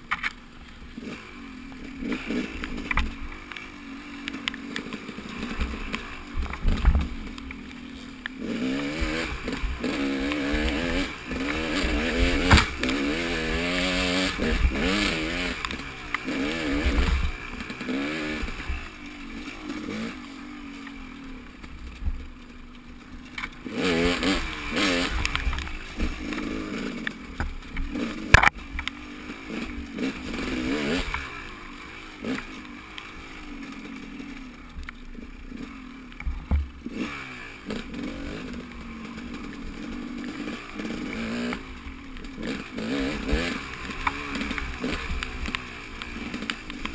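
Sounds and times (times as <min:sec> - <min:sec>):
road rumble: 0:00.0 - 0:46.9
wind: 0:00.0 - 0:46.9
vehicle engine revving: 0:00.2 - 0:46.9
sharp click: 0:27.0 - 0:29.0.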